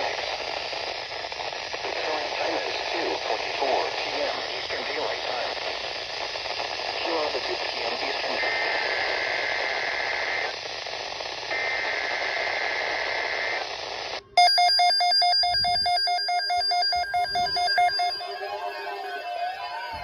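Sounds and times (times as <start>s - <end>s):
radio static hiss: 0.0s - 14.4s, 15.6s - 20.0s
digital data bursts: 14.4s - 20.0s
pulsing electronic alert tone: 14.4s - 20.0s
warbling siren-like tone: 15.3s - 20.0s.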